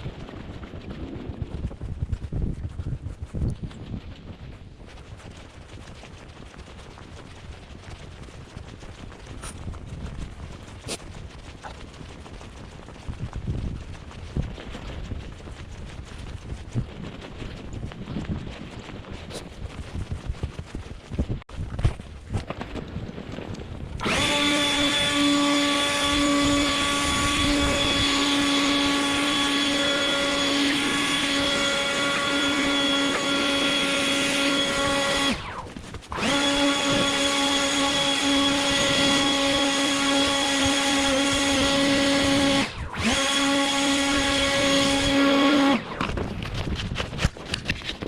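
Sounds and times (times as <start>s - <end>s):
snow blower whining: 24.0s - 46.8s.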